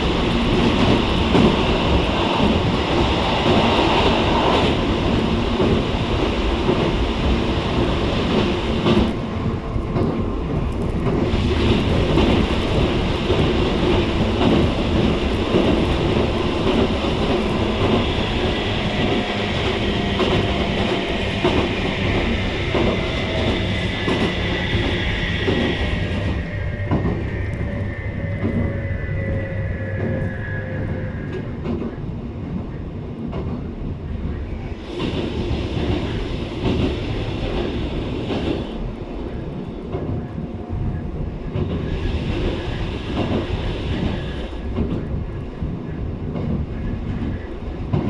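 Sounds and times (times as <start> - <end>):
train wheels rumbling: 0.0 - 48.0.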